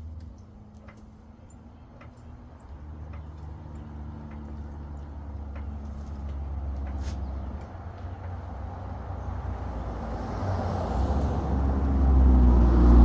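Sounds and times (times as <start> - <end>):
vehicle passing by: 9.5 - 13.0.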